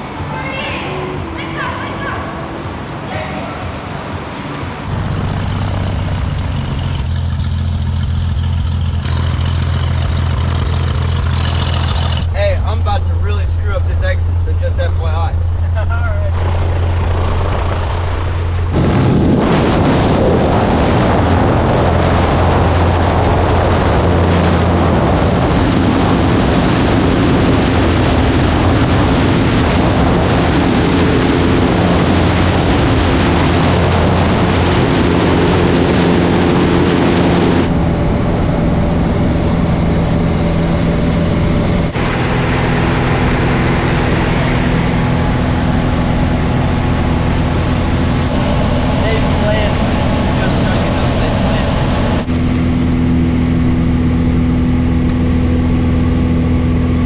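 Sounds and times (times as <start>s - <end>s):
light aircraft engine droning: 0.0s - 57.0s
wind rushing over microphone: 15.8s - 57.0s.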